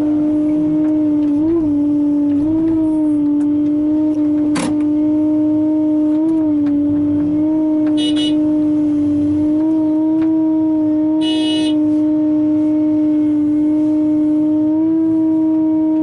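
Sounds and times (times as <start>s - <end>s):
excavator engine droning: 0.0s - 16.0s.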